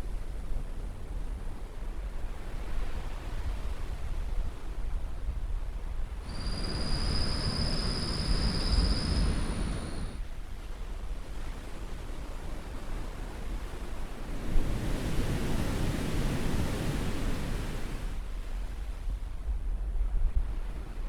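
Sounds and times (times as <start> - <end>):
wind hiss: 6.2 - 10.4
high steady whine: 6.3 - 10.2
surf washing in: 6.3 - 10.2, 14.3 - 18.3.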